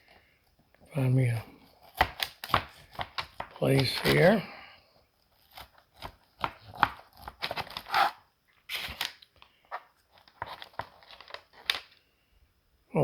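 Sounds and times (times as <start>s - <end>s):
paper rustling: 2.0s - 4.4s, 5.3s - 12.1s.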